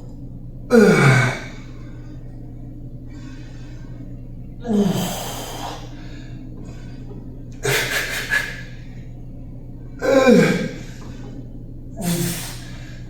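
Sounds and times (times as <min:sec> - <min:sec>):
steady low hum: 0:00.0 - 0:13.0
man exhaling forcefully: 0:12.0 - 0:12.8.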